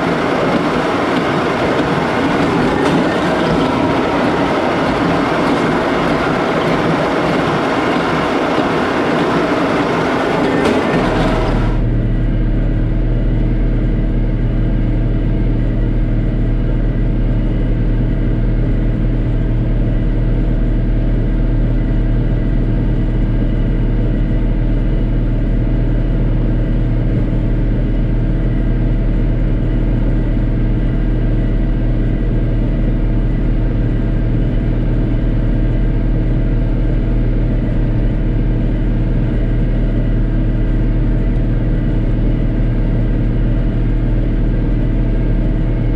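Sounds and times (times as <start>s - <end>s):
baler machinery clattering: 0.0s - 11.9s
tractor engine drone: 0.0s - 45.9s.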